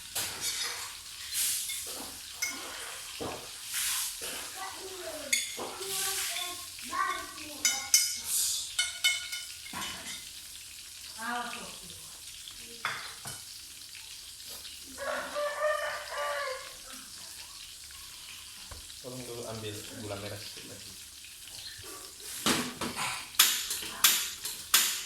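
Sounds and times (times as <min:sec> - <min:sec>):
rooster crowing: 0:14.9 - 0:17.1
chickens calling: 0:15.0 - 0:16.8.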